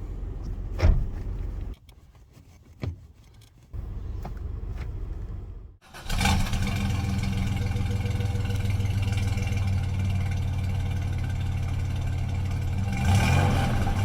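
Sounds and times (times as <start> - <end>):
car engine running: 3.8 - 14.0.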